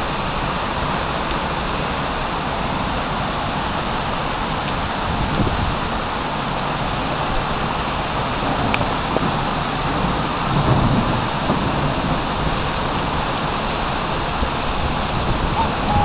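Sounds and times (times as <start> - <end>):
heavy rain pouring: 0.0 - 16.0
low thunder rumble: 4.8 - 16.0.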